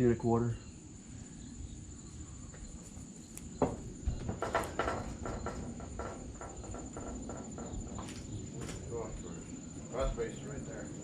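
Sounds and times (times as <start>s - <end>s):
crickets trilling: 0.0s - 11.0s
light knocks and taps: 3.3s - 8.8s.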